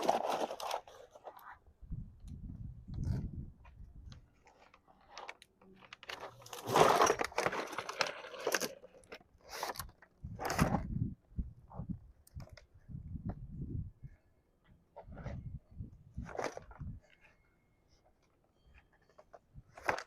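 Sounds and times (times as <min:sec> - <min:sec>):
crunching and rustling handling noises: 0:00.0 - 0:01.6, 0:02.9 - 0:11.0, 0:14.9 - 0:20.0.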